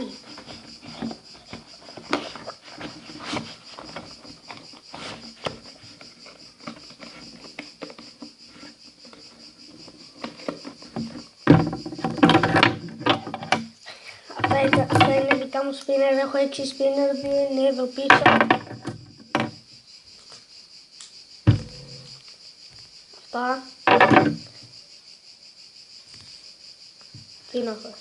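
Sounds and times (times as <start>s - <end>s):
rustling and knocking: 0.0s - 15.5s, 18.1s - 19.8s, 21.5s - 22.9s, 23.8s - 24.8s.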